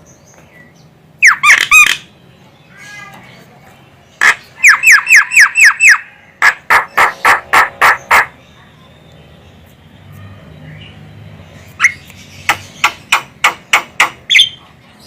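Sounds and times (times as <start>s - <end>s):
bird giving harsh calls: 1.2s - 2.1s, 4.1s - 8.5s.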